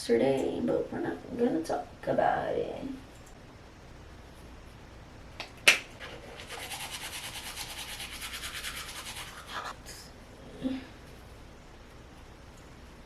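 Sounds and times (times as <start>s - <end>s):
brush scrubbing: 6.0s - 9.8s.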